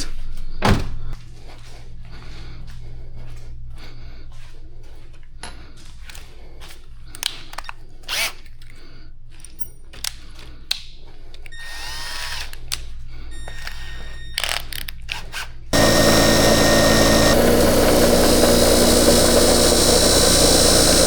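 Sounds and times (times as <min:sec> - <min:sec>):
buffing wheel motor humming: 0:15.8 - 0:21.0.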